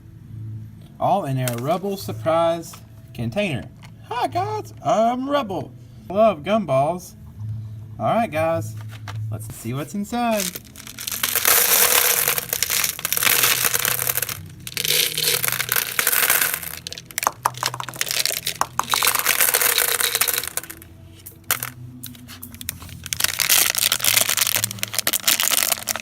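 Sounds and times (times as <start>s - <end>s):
plastic container rattling and crinkling: 1.4s - 1.8s, 10.3s - 26.0s.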